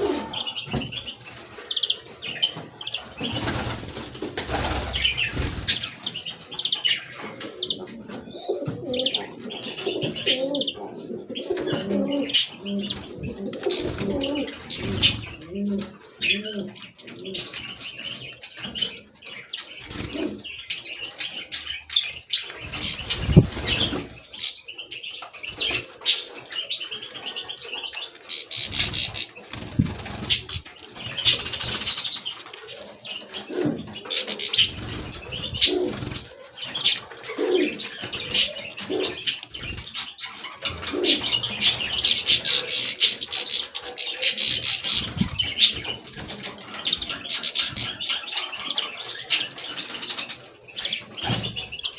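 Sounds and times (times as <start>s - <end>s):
pigeons cooing: 0.0s - 51.9s
songbirds chirping: 0.0s - 51.9s
wings flapping: 2.9s - 6.2s, 12.9s - 15.4s, 22.5s - 24.6s, 28.2s - 32.8s, 33.4s - 48.1s.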